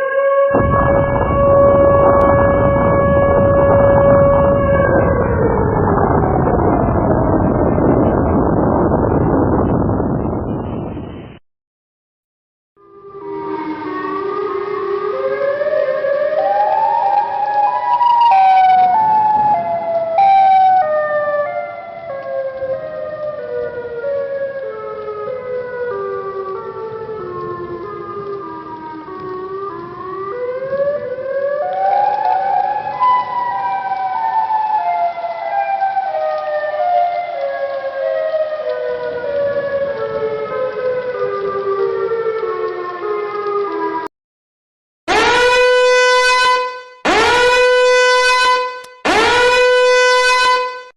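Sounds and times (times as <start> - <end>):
siren wailing in steps: 0.0 - 11.2, 12.8 - 44.1, 45.1 - 50.9.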